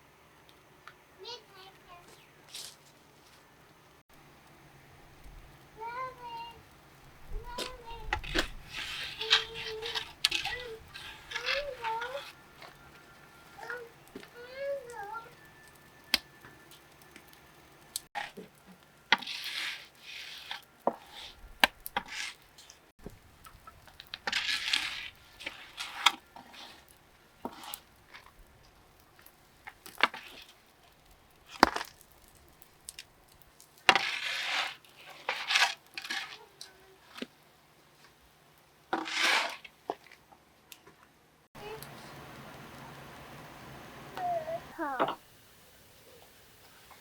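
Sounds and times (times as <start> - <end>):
short scraping sounds: 7.4 - 13.9, 33.9 - 36.6, 38.9 - 39.7.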